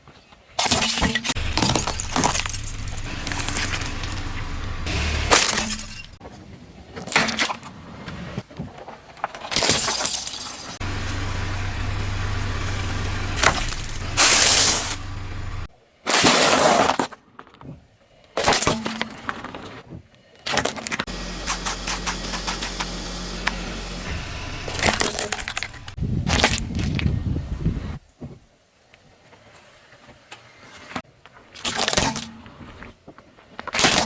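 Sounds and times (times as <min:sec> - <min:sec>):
car engine running low: 0:01.4 - 0:06.2, 0:10.8 - 0:15.7, 0:21.1 - 0:26.0
objects crunching under car tyre: 0:01.4 - 0:06.2, 0:10.8 - 0:15.7, 0:21.1 - 0:26.0.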